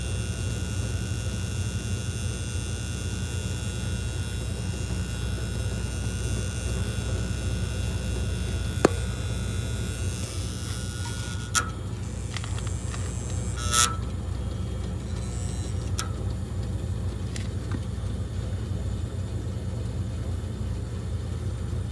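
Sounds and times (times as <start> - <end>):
gas valve buzzing: 0.0 - 18.8
sharp clicks: 8.4 - 17.8.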